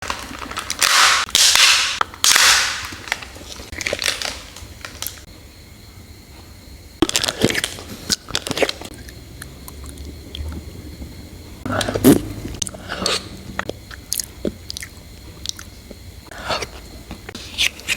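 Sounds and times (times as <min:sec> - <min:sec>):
plastic packaging crinkling and tearing: 0:00.0 - 0:05.2, 0:07.0 - 0:09.0.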